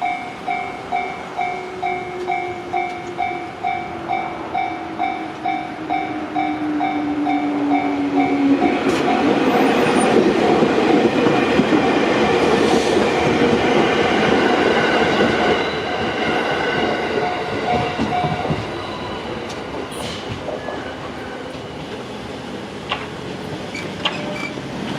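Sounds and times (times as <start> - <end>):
railroad crossing bell: 0.0 - 10.1, 14.6 - 19.9
train wheels rumbling: 0.0 - 24.9.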